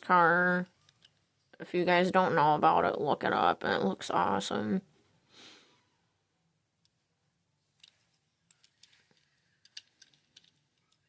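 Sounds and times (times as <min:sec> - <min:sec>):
toy car package clicks: 0:07.8 - 0:11.0.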